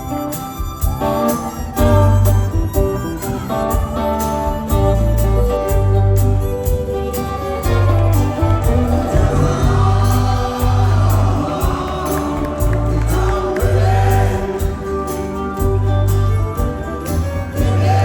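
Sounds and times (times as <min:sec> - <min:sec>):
country-rock band playing: 0:00.0 - 0:18.0
drum beat: 0:06.6 - 0:18.0
heavy bass: 0:07.7 - 0:18.0
person singing: 0:08.6 - 0:15.8, 0:17.4 - 0:18.0.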